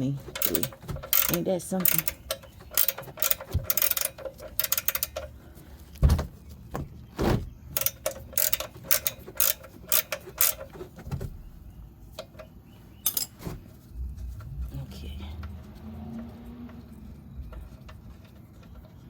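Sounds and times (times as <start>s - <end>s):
ratchet wrench clicking: 0.3s - 5.3s, 7.8s - 10.8s.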